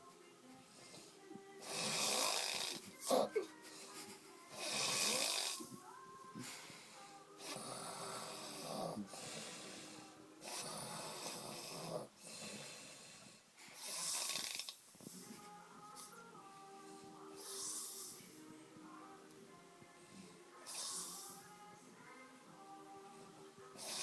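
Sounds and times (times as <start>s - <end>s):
quiet breaths: 0.0s - 24.0s
man snoring loudly: 1.6s - 3.3s, 4.6s - 5.7s, 7.4s - 12.7s, 13.8s - 14.8s.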